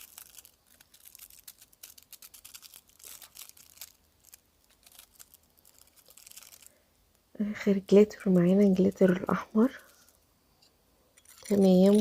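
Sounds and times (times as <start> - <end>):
plastic packets crinkling and tearing: 0.0 - 6.8.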